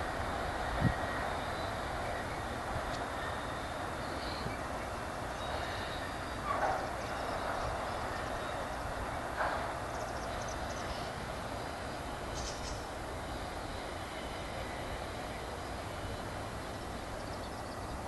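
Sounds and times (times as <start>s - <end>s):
freight train rolling past: 0.0s - 18.0s
train car clanks: 5.5s - 11.3s.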